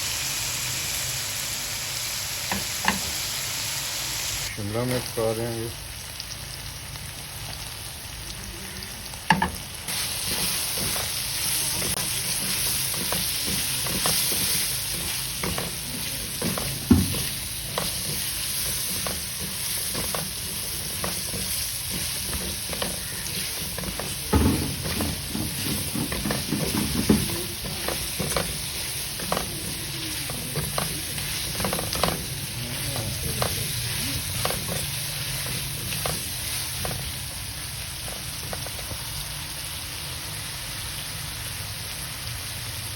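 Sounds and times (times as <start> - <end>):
food sizzling in a hot pan: 0.0 - 42.9
spatula scraping a pan: 9.9 - 37.2
heavy knocks on a pan: 16.4 - 17.9, 23.8 - 28.5.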